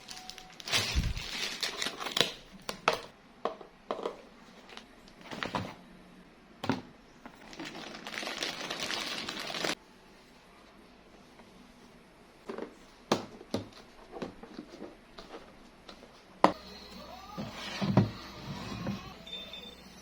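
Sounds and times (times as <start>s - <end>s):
plastic crinkling: 0.0s - 2.5s, 7.3s - 9.8s
plastic rustle: 0.0s - 2.5s, 7.3s - 9.8s.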